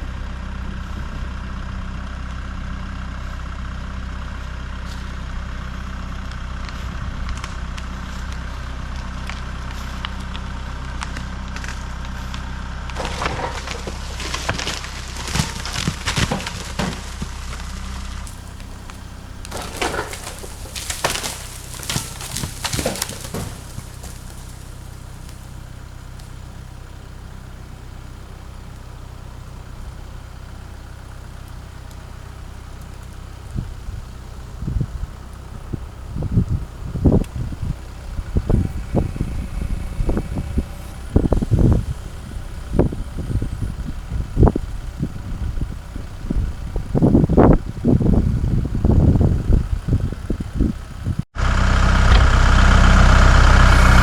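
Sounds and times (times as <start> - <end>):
engine running: 0.0 - 54.0
wood cracking and splintering: 7.2 - 48.6.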